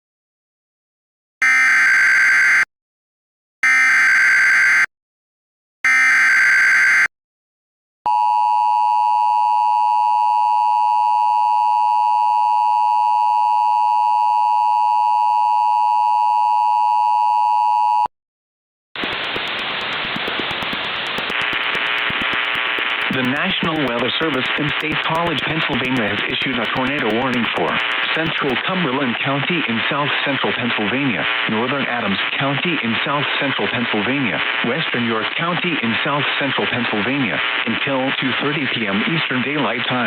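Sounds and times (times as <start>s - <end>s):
two-tone attention signal: 1.4s - 2.7s, 3.6s - 4.9s, 5.9s - 7.1s
radio static hiss: 19.0s - 40.0s.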